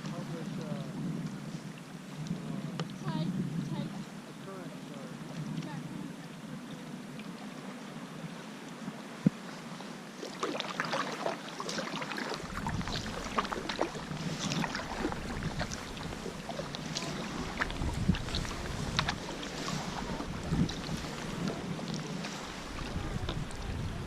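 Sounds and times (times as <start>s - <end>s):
wind buffeting microphone: 0.0s - 4.3s, 12.3s - 24.0s
paddle splashing in water: 0.0s - 24.0s.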